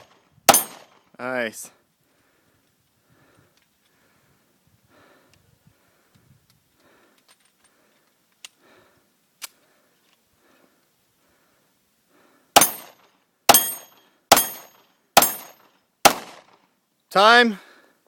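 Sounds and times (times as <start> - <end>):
loud gunshots: 0.0 - 0.9, 12.6 - 16.5
hard breathing: 1.8 - 12.6, 17.6 - 18.0.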